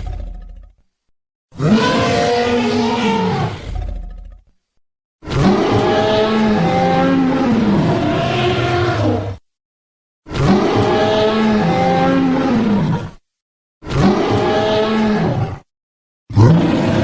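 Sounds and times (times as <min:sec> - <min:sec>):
dinosaur roar: 0:01.6 - 0:04.5, 0:05.2 - 0:09.4, 0:10.3 - 0:13.2, 0:13.8 - 0:15.7, 0:16.3 - 0:17.0.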